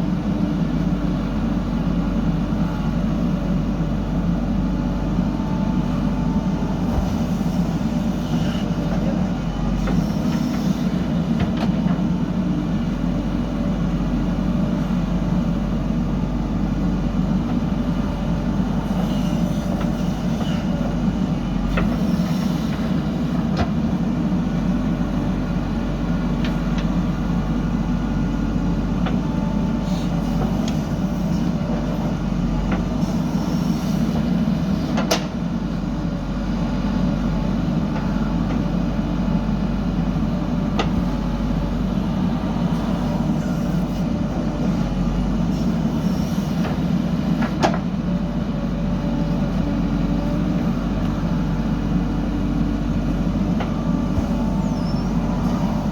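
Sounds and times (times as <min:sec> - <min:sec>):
heavy diesel engine running: 0:00.0 - 0:55.9.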